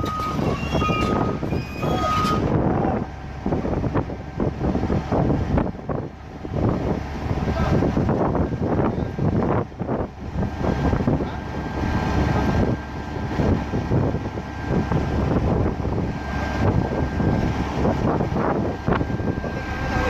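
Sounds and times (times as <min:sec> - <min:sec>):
excavator diesel engine running: 0:00.0 - 0:20.0
wind buffeting microphone: 0:00.0 - 0:20.0.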